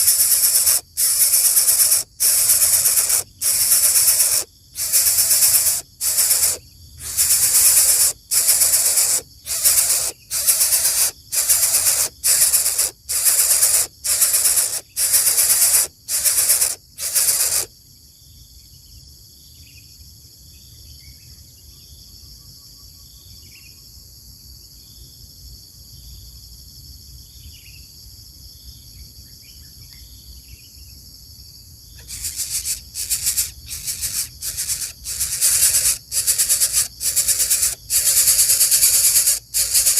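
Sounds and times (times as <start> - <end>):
bird nestling hissing: 0.0 - 17.7, 32.0 - 39.9
high insect drone: 0.0 - 18.8, 31.1 - 39.9
faint bird chirps: 32.0 - 39.9.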